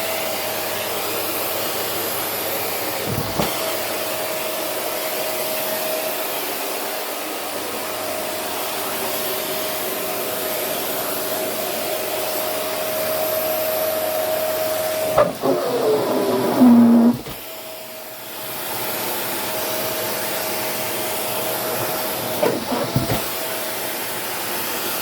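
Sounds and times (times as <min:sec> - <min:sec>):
vacuum cleaner running: 0:10.1 - 0:17.6, 0:18.8 - 0:25.0.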